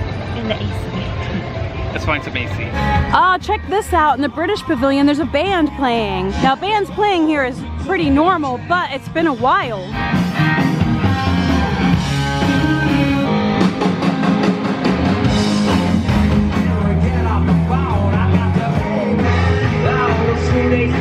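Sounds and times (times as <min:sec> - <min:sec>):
live rock band playing: 0:02.7 - 0:21.0
person singing: 0:16.5 - 0:21.0.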